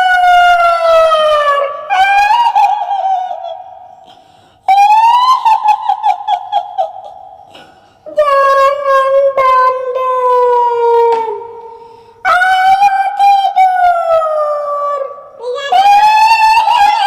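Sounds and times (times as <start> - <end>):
woman wailing with echo: 0.0 - 4.1, 4.7 - 17.0.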